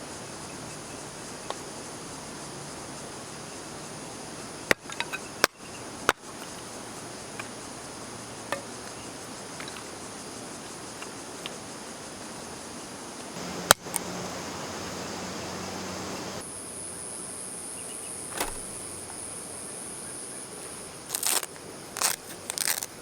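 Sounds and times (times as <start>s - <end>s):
crickets chirring: 0.0s - 23.0s
sharp clicks or knocks: 18.3s - 18.8s.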